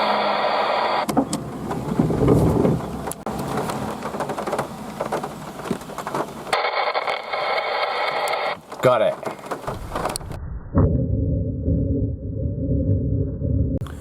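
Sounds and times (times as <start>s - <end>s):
rain: 3.0s - 6.6s
low thunder rumble: 9.7s - 14.0s.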